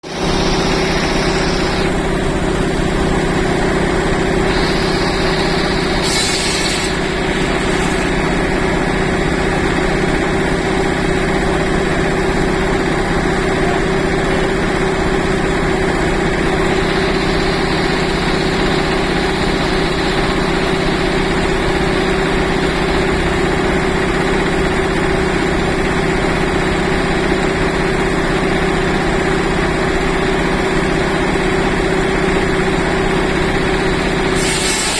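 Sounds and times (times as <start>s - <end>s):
sawmill machinery droning: 0.0s - 34.9s
brief hiss: 6.0s - 8.4s, 34.4s - 34.9s.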